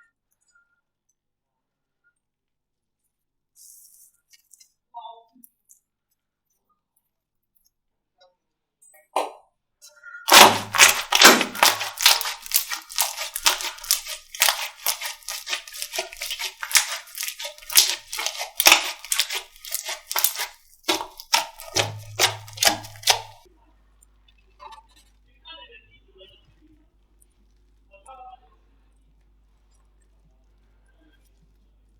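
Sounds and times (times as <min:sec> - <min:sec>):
slime crackling pops and clicks: 0:10.3 - 0:23.4.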